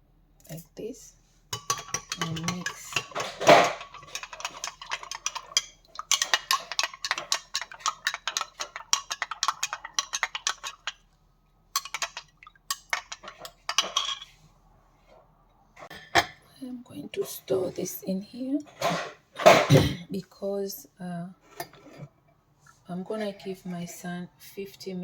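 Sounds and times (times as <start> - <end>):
spoon clinking against container: 1.6 - 11.0, 11.8 - 14.2.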